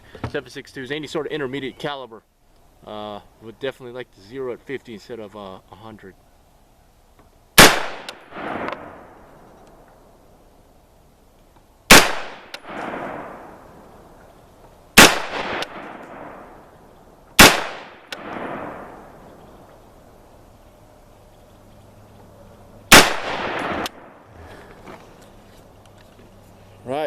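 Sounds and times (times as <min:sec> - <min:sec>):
rifle shots: 0:07.6 - 0:09.3, 0:11.9 - 0:13.8, 0:15.0 - 0:16.7, 0:17.4 - 0:19.4, 0:22.9 - 0:24.2
rolling gunshot echo: 0:07.6 - 0:09.6, 0:11.9 - 0:13.8, 0:15.0 - 0:16.7, 0:17.4 - 0:19.7, 0:22.9 - 0:24.2.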